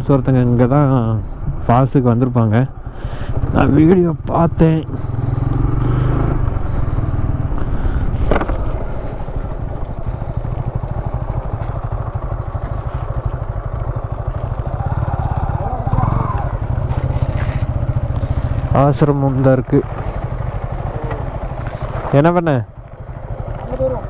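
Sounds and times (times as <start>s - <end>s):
motorcycle engine running: 0.0s - 24.0s.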